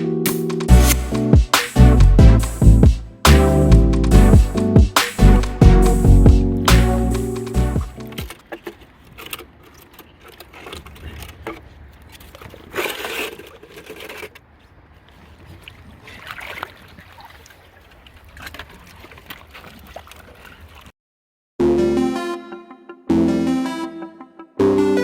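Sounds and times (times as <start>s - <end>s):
background music: 0.0s - 8.3s, 21.6s - 25.0s
water trickling and splashing: 8.2s - 20.9s.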